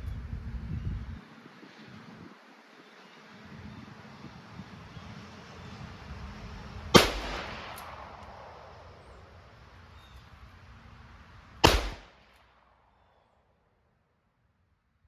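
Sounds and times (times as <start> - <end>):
revolver shots: 11.6 - 12.1.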